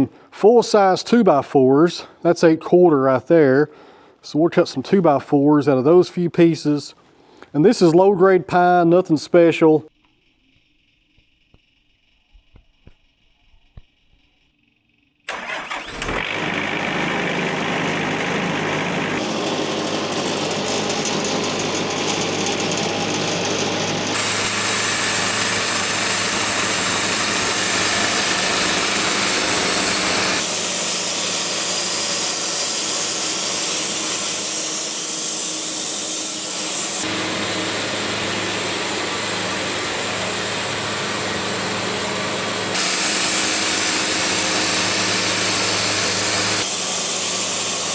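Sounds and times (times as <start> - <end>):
sawmill engine running: 15.3 - 47.9.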